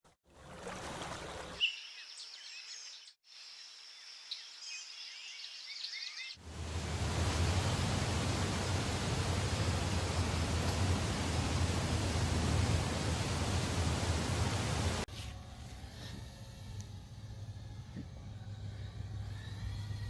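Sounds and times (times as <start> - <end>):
bird chirps: 1.6 - 3.2
loud steady rushing noise: 6.4 - 15.1.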